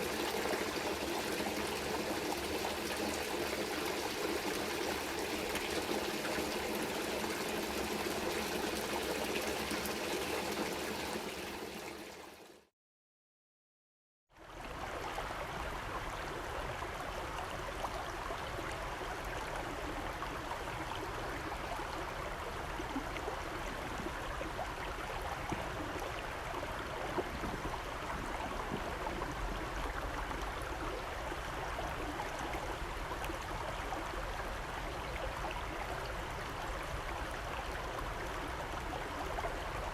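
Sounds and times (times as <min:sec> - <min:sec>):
running water rushing: 0:00.0 - 0:12.7.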